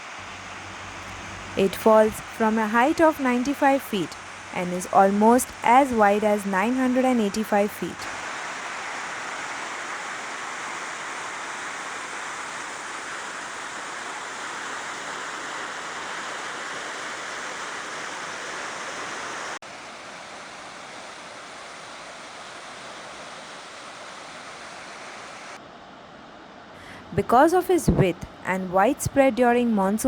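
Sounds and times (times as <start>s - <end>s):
waterfall roaring: 0.0s - 19.6s.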